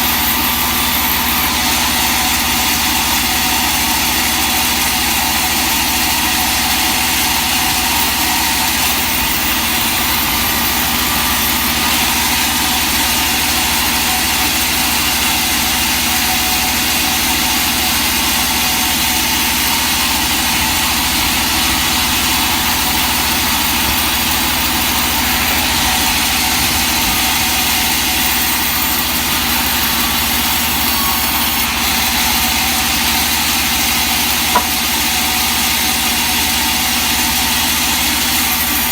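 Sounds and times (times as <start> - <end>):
sawmill machinery humming: 0.0 - 38.9
short click: 34.6 - 34.8.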